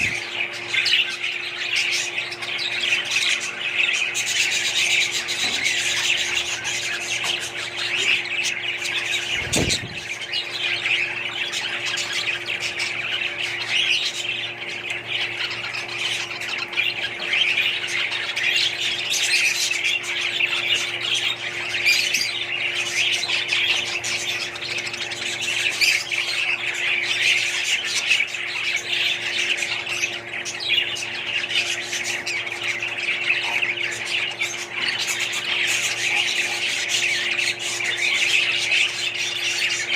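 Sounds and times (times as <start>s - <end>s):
parrots chattering and squawking: 0.0s - 39.9s
steady low hum: 0.0s - 39.9s.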